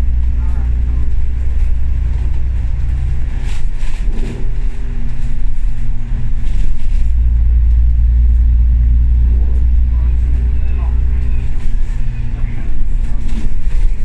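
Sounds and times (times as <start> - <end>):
bus engine drone: 0.0 - 14.0.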